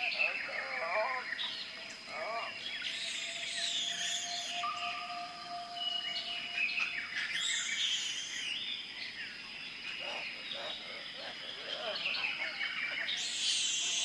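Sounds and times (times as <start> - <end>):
birds chirping and whistling: 0.0 - 8.8.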